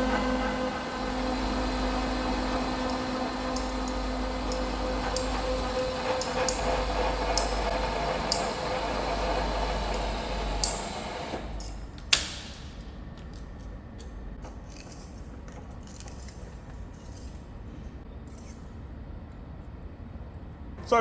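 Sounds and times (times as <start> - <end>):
milling machine boring steel: 0.0 - 12.9.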